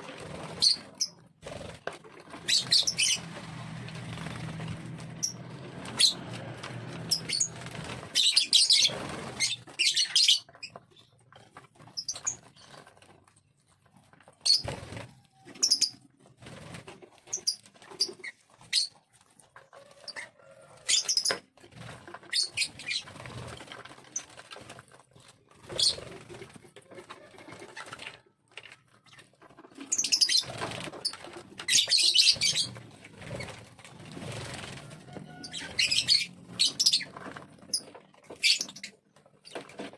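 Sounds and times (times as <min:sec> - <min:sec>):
bird chirping and squeaking: 0:00.4 - 0:01.2, 0:02.3 - 0:03.4, 0:05.1 - 0:06.3, 0:07.0 - 0:11.2, 0:11.9 - 0:12.8, 0:14.4 - 0:14.7, 0:15.4 - 0:16.0, 0:20.0 - 0:21.4, 0:22.2 - 0:23.3, 0:29.1 - 0:33.6, 0:35.0 - 0:39.8.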